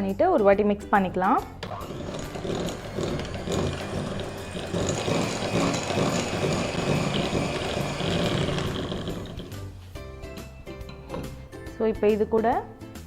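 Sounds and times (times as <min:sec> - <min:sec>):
electric hand mixer running: 0:01.6 - 0:09.7.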